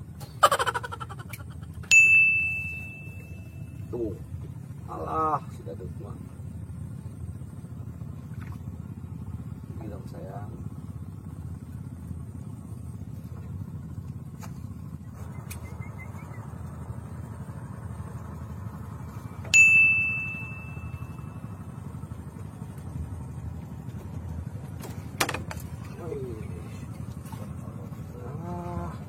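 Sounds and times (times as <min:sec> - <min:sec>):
steady low rumble: 0:00.0 - 0:29.0
sharp metallic ding: 0:01.9 - 0:03.9, 0:19.5 - 0:21.5.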